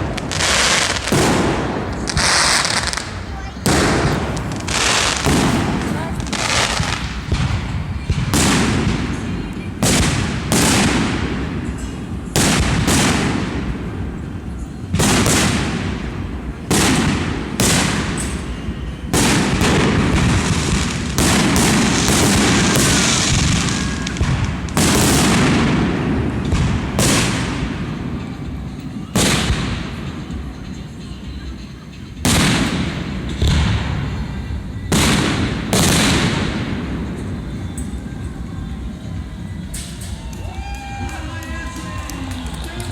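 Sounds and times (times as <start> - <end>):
firework shells bursting: 0.0 - 30.9
firework crackle and rumble: 0.0 - 42.9.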